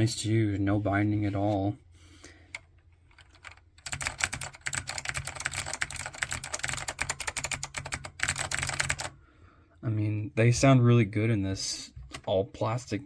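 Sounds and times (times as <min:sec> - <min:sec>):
fast typing on clicky keyboard: 0:03.1 - 0:09.2.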